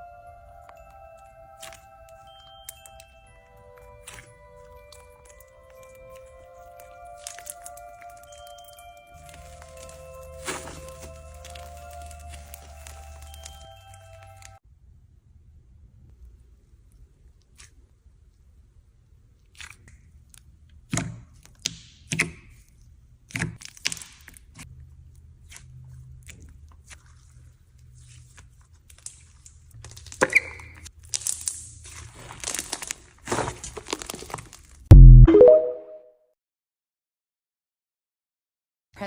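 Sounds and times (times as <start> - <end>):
slime squished by hand: 7.1 - 8.6, 19.4 - 22.7.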